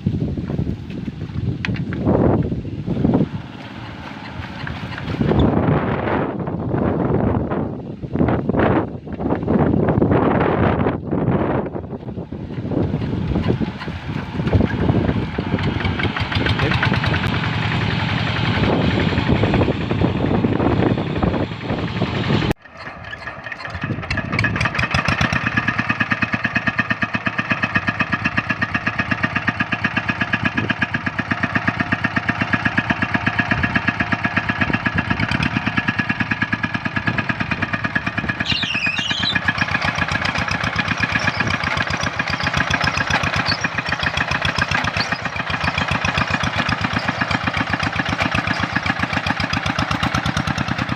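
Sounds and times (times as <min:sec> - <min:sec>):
small diesel engine chugging: 0:00.0 - 0:50.9
brief high squeak: 0:38.4 - 0:39.5.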